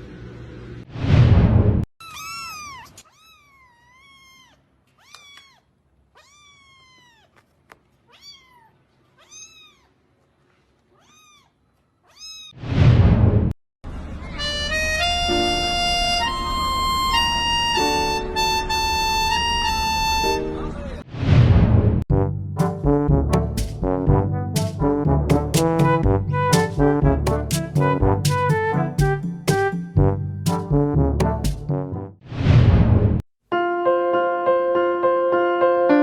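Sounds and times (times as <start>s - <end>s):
kitten meowing: 2.0s - 7.4s, 8.1s - 9.9s, 11.0s - 12.5s
music with held notes: 14.4s - 20.8s, 22.6s - 31.6s.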